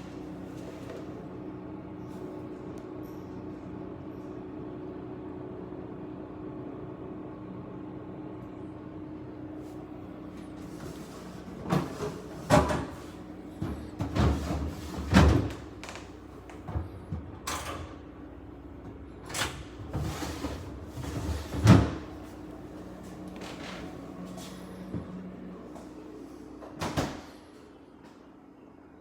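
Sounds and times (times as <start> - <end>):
refrigerator hum: 0.0 - 29.0
refrigerator doors opening and shutting: 10.6 - 22.5, 23.1 - 25.1, 26.6 - 27.4
drawers sliding: 19.3 - 22.1.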